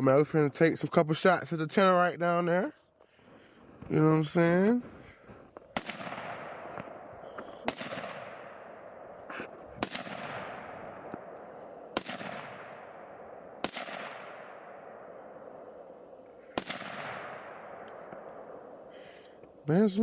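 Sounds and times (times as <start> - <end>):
gunshots with echo: 5.7 - 19.6.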